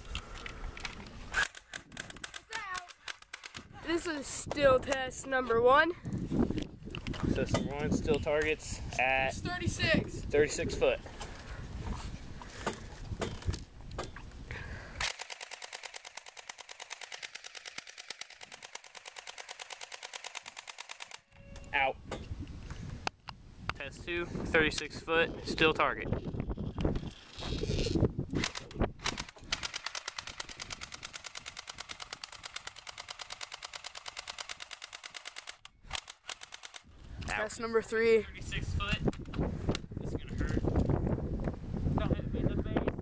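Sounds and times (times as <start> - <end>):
airsoft rifle full-auto firing: 15.0 - 21.2
airsoft gun automatic burst: 15.0 - 21.3, 28.4 - 36.9.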